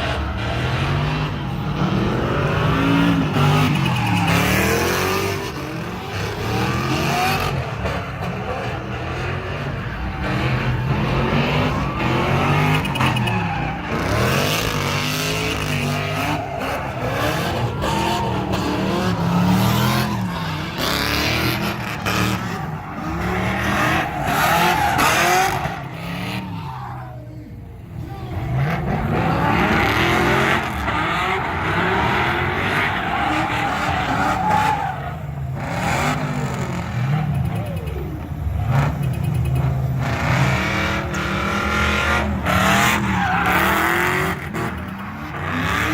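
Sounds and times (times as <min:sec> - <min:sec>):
car engine revving: 0:00.0 - 0:45.9.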